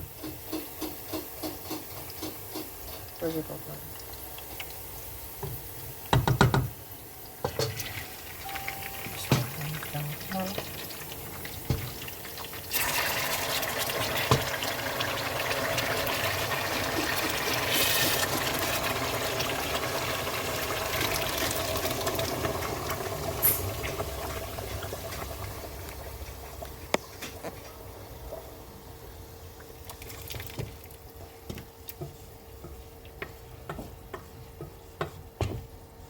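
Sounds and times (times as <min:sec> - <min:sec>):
tomatoes sizzling in hot oil: 0:00.0 - 0:06.2, 0:06.8 - 0:26.8.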